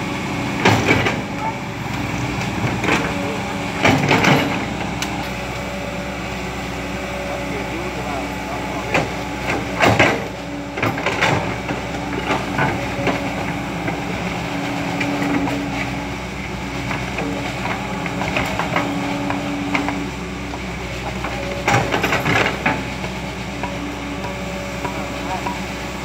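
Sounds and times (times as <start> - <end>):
excavator engine hum: 0.0 - 26.0
metallic clanks and knocks: 2.6 - 5.4, 21.0 - 25.7.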